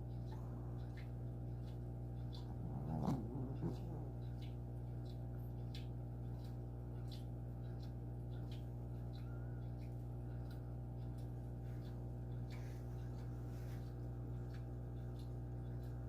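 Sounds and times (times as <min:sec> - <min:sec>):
faint ticks and clicks: 0:00.0 - 0:16.0
steady low hum: 0:00.0 - 0:16.0.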